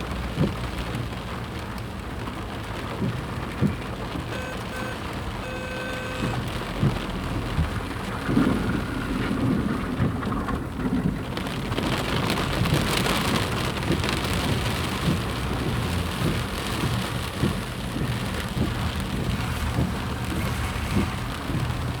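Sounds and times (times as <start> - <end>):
flood water rushing: 0.0 - 22.0
low rumble: 14.9 - 22.0.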